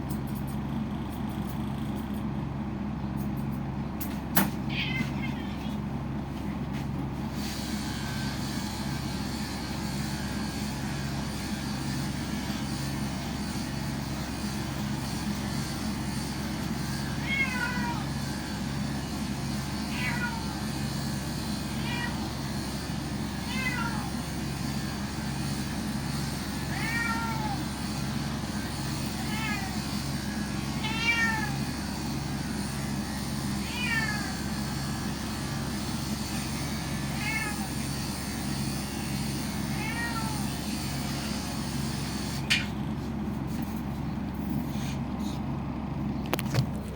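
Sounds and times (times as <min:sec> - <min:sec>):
steady low hum: 0:00.0 - 0:07.4
cat meowing: 0:04.6 - 0:05.8, 0:17.2 - 0:18.2, 0:19.7 - 0:20.8, 0:21.7 - 0:22.4, 0:23.4 - 0:24.3, 0:26.6 - 0:27.8, 0:29.0 - 0:30.0, 0:30.6 - 0:31.8, 0:33.6 - 0:34.6, 0:37.1 - 0:37.9, 0:39.6 - 0:40.7.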